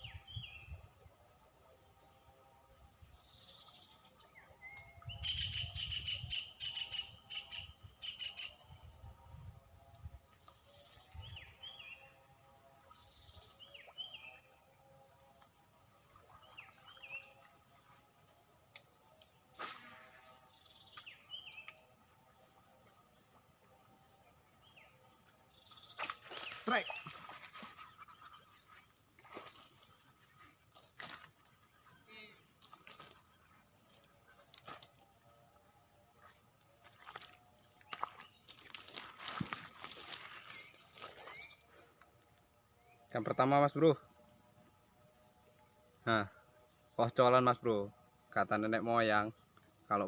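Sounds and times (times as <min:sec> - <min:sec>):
crickets droning: 0:00.0 - 0:50.0.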